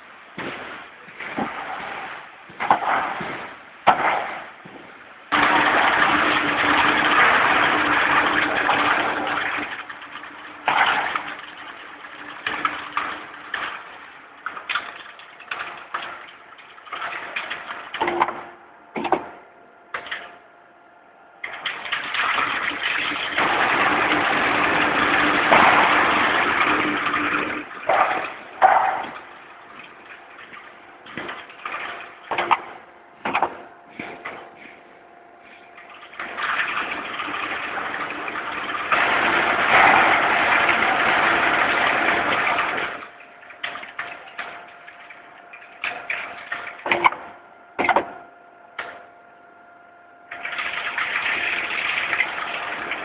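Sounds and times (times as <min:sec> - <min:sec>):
roll forming machine running: 0:00.0 - 0:53.0
metal clanks and knocks: 0:00.4 - 0:20.4, 0:24.4 - 0:34.8.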